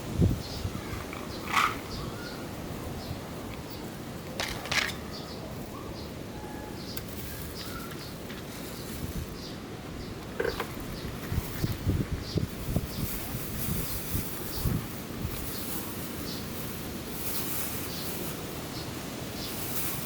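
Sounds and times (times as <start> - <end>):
birds chirping: 0.0 - 14.8.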